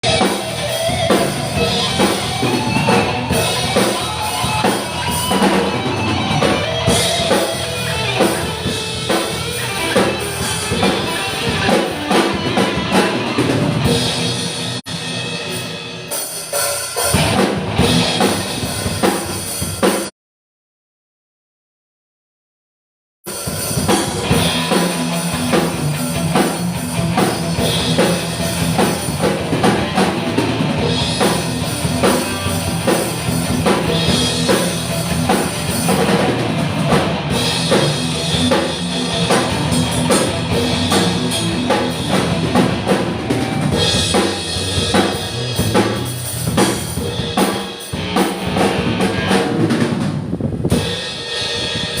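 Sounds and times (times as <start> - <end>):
low pitched instrument notes: 29.4 - 50.4.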